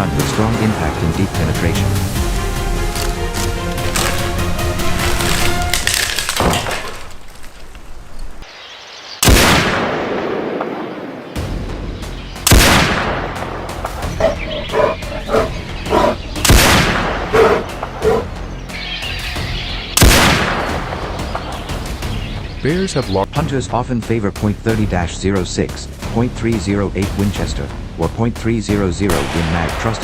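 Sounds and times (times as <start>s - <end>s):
rifle shots with echo: 9.2s - 11.3s, 12.5s - 13.4s, 16.5s - 17.3s, 29.1s - 30.0s.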